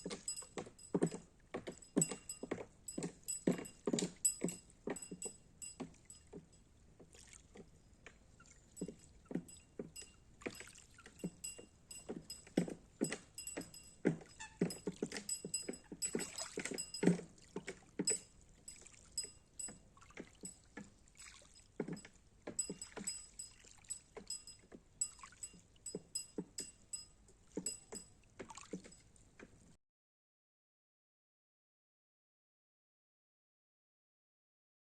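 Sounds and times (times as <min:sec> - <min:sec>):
metallic clinks ringing: 0:00.0 - 0:06.6, 0:08.8 - 0:17.2, 0:18.0 - 0:19.8, 0:21.9 - 0:28.1
buoy knocking on water: 0:00.0 - 0:07.7, 0:08.8 - 0:29.5.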